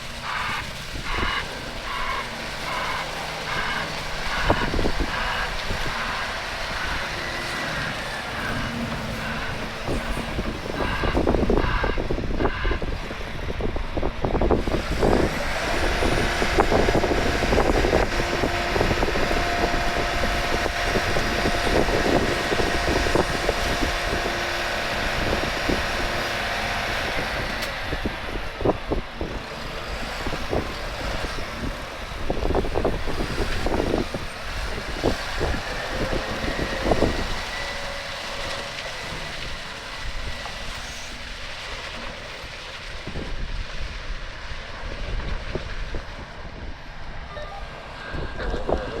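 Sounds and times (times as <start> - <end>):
diesel engines running: 0.0 - 49.0.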